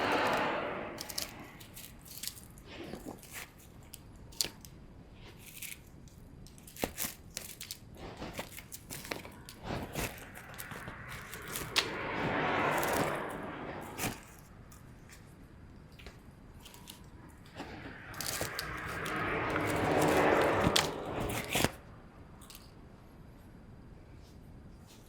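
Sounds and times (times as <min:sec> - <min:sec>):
wire rustling and crinkling: 0:01.0 - 0:11.9, 0:15.9 - 0:21.8.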